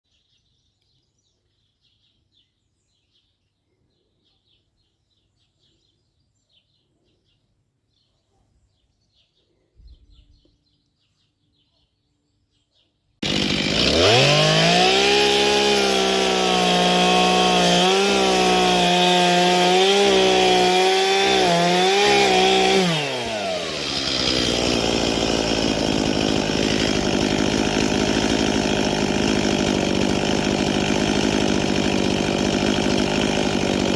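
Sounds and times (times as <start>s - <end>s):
chainsaw revving and idling: 13.2s - 33.9s.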